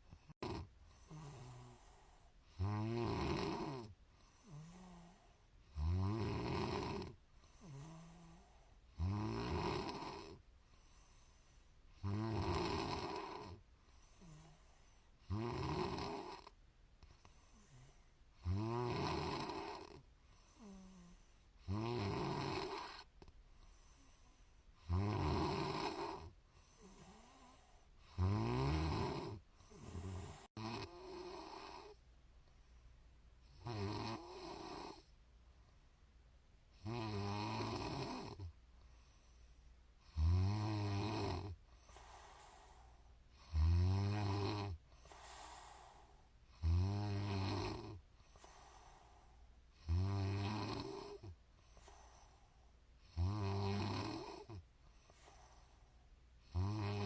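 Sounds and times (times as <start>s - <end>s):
soft breathing: 0.0s - 2.5s, 3.7s - 5.6s, 7.1s - 9.0s, 10.3s - 12.0s, 13.3s - 15.2s, 16.4s - 18.4s, 19.8s - 21.6s, 23.0s - 24.8s, 26.0s - 28.2s, 29.1s - 31.2s, 31.8s - 33.6s, 38.4s - 40.0s, 41.5s - 43.5s, 44.8s - 46.6s, 47.2s - 49.8s, 50.8s - 53.1s, 54.4s - 56.2s
woman snoring: 0.2s - 11.4s, 12.0s - 16.6s, 17.2s - 23.1s, 24.8s - 32.0s, 33.5s - 35.1s, 36.8s - 38.5s, 40.0s - 52.4s, 53.0s - 55.8s, 56.4s - 57.0s.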